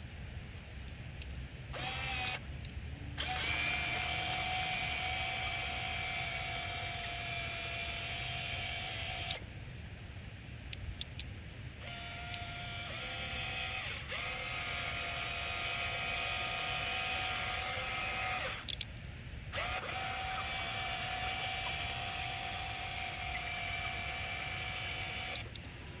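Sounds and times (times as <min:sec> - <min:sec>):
toy excavator motor whining: 0:01.7 - 0:02.4, 0:03.2 - 0:09.4, 0:11.8 - 0:18.7, 0:19.5 - 0:26.0.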